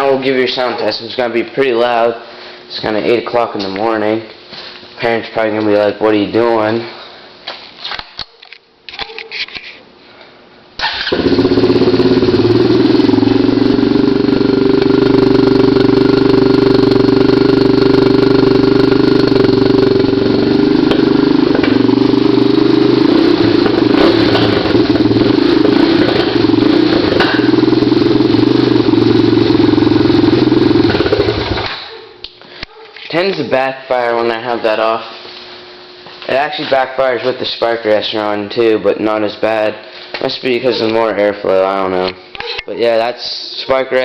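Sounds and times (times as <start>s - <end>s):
exhaust pops: 10.8s - 31.9s
loud four-stroke engine running: 10.9s - 31.8s.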